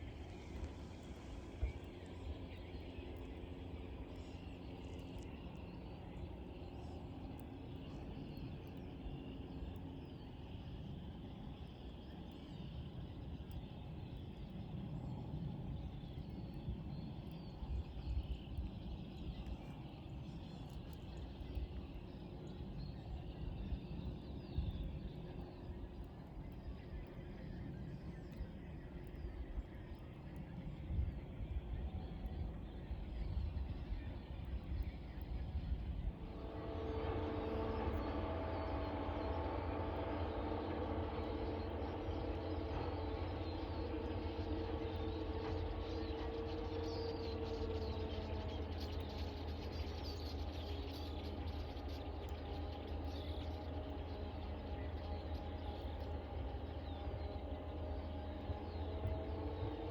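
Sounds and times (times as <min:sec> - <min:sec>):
faint birdsong: 0:00.0 - 0:59.9
low hum: 0:00.0 - 0:59.9
steady low rumble: 0:00.0 - 0:59.9.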